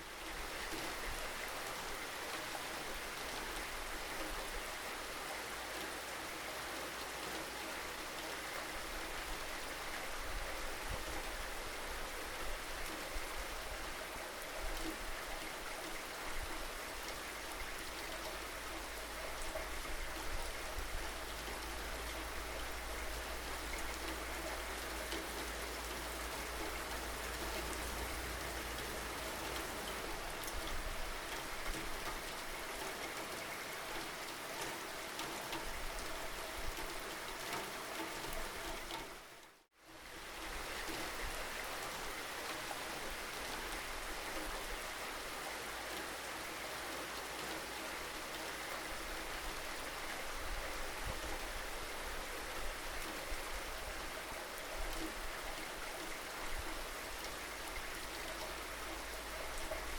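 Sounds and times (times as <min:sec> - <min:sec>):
steady rainfall hiss: 0:00.0 - 0:59.9
raindrops ticking on surface: 0:16.9 - 0:52.1, 0:52.7 - 0:59.9.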